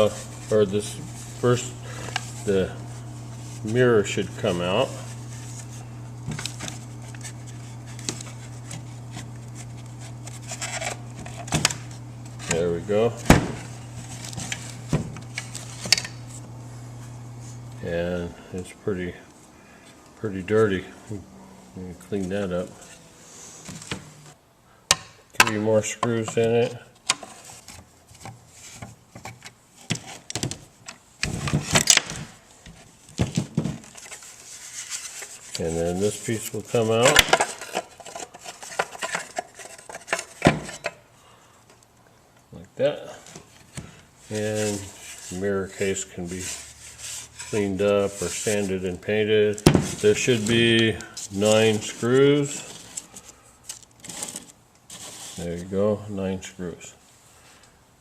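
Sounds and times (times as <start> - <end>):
parts clicking and scraping: 0.0 - 16.5, 22.0 - 42.5, 43.2 - 55.6
steady low hum: 0.0 - 24.9.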